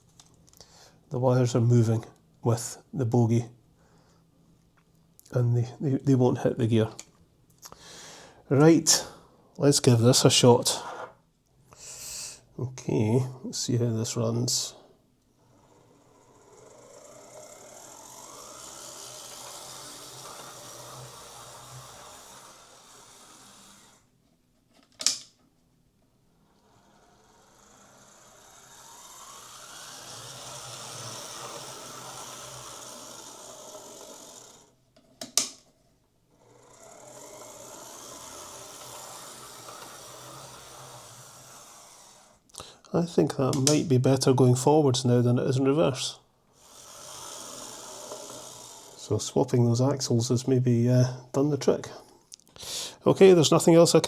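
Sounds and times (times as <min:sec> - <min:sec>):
model train motor whirring: 0:15.3 - 0:24.2, 0:26.4 - 0:42.8, 0:46.2 - 0:51.4.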